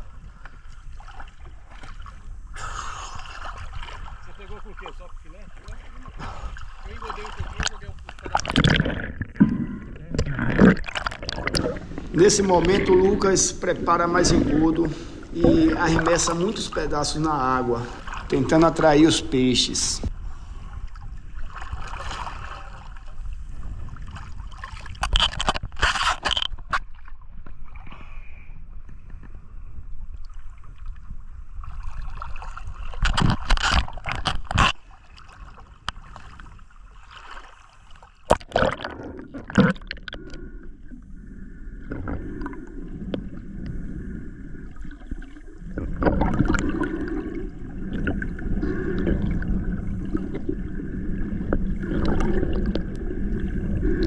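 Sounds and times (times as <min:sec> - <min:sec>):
water sloshing and gurgling: 0:00.0 - 0:54.0
loud water splashing: 0:05.9 - 0:20.0
low hum: 0:07.9 - 0:20.2.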